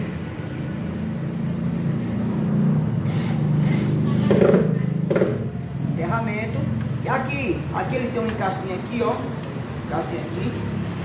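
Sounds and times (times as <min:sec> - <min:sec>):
vehicle engine drone: 0:00.0 - 0:08.2.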